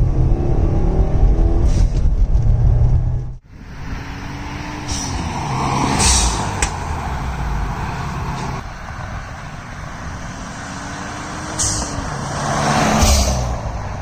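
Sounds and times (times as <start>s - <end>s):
car engine revving: 0.0s - 8.6s, 9.4s - 14.0s.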